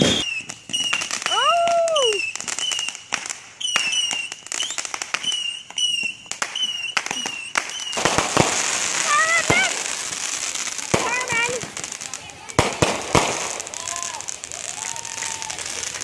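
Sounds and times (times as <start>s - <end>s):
high wavering whistle: 0.0s - 3.0s, 3.6s - 8.0s
fireworks bangs and crackles: 0.0s - 16.0s.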